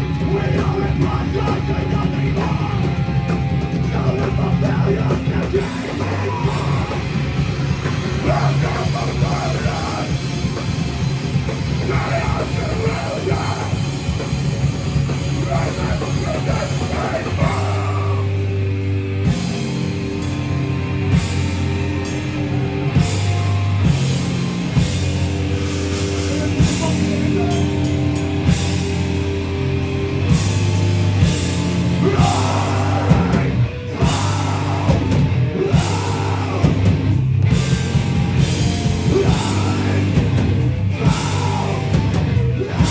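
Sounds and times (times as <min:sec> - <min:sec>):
heavy metal band playing: 0:00.0 - 0:42.9
person singing: 0:00.2 - 0:03.0, 0:03.8 - 0:07.3, 0:08.2 - 0:10.2, 0:11.8 - 0:13.8, 0:15.3 - 0:18.4, 0:32.0 - 0:37.0, 0:39.0 - 0:42.9.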